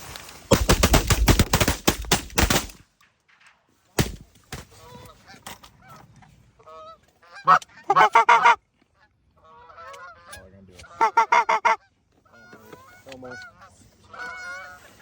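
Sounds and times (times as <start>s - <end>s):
goose honking: 6.7s - 8.6s, 9.4s - 15.0s.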